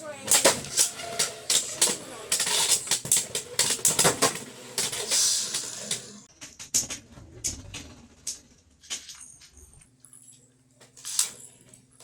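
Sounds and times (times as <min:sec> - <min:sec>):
spinning tops clattering: 0:00.0 - 0:06.3, 0:10.8 - 0:11.7.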